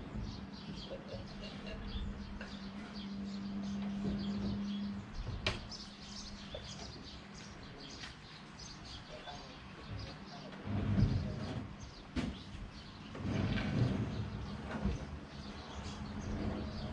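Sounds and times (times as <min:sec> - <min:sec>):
small birds chirping: 0:00.0 - 0:16.9.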